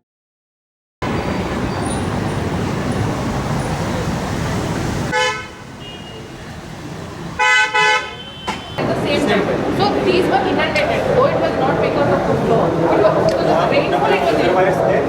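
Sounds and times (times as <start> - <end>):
road noise: 1.0 - 15.0
vehicle horns honking: 5.0 - 6.7, 7.4 - 8.9.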